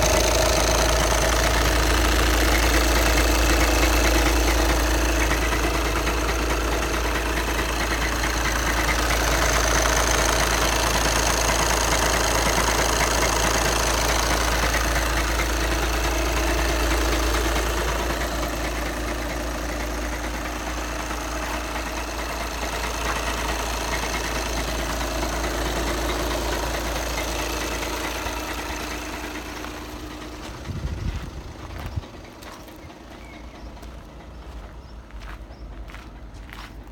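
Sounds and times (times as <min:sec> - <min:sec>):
diesel engine running: 0:00.0 - 0:36.9.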